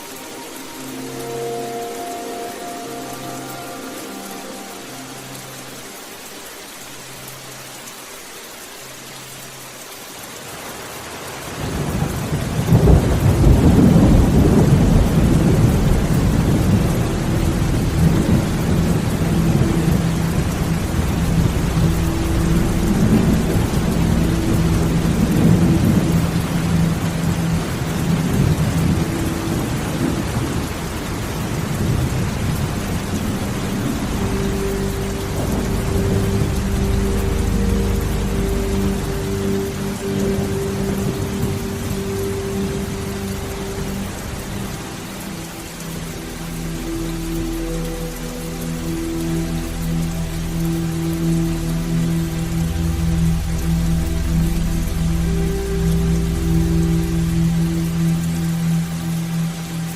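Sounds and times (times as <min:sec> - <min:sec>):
rain falling: 0:00.0 - 0:59.9
low rumble of thunder: 0:11.6 - 0:44.8.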